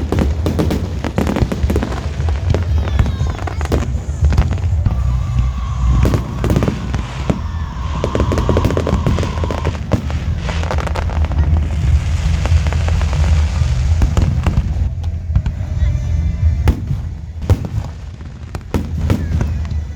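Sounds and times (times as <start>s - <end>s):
fireworks bangs and crackles: 0.0s - 19.9s
low rumble: 0.0s - 19.9s.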